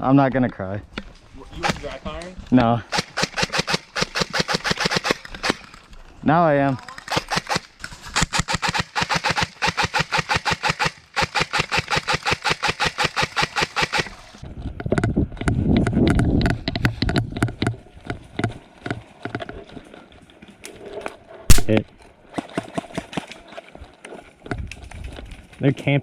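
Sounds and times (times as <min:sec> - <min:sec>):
airsoft gun firing: 0:02.9 - 0:05.7, 0:07.0 - 0:14.4, 0:21.5 - 0:21.8
scattered clicks: 0:02.9 - 0:05.9, 0:06.8 - 0:19.6.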